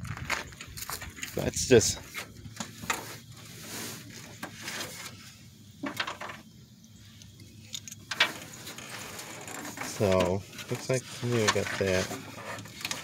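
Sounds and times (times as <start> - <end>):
clicks and knocks of parts handled: 7.2 - 8.8.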